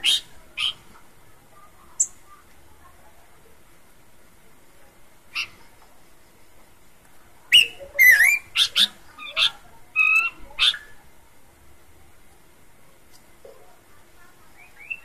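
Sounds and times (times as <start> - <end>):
babbler singing whistled notes: 7.5 - 8.9, 14.6 - 15.0.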